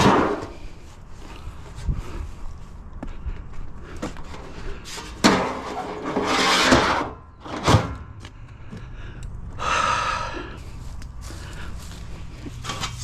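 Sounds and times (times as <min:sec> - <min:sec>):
hard objects scraping: 0:04.1 - 0:07.9.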